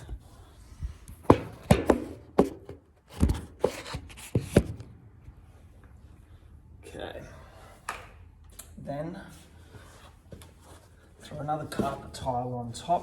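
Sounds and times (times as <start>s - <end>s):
carpet tiles knocking on floor: 1.3s - 2.8s.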